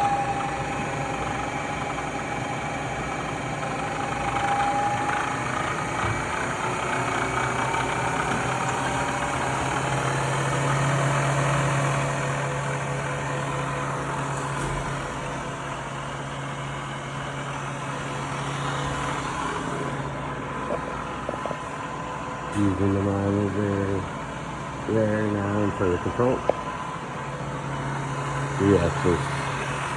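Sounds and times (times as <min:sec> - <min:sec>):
milling machine motor hum: 0:00.0 - 0:29.9.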